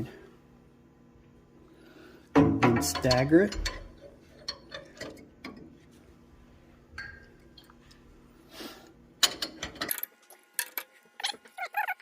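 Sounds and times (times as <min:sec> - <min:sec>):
loud metal clunk: 0:02.4 - 0:03.9
glass bottles clinking: 0:07.0 - 0:07.7.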